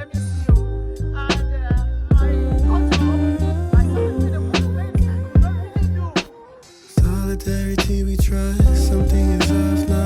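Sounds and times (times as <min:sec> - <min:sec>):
deep steady bass: 0:00.0 - 0:06.2, 0:07.0 - 0:10.0.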